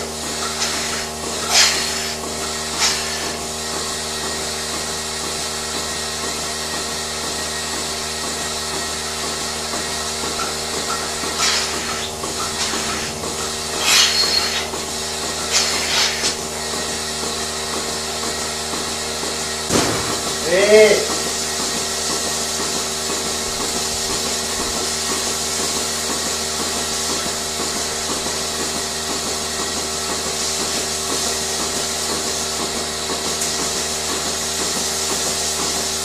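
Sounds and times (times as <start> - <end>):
machinery hum: 0.0 - 25.3
hissing or clattering bursts: 0.2 - 5.9, 8.7 - 36.0.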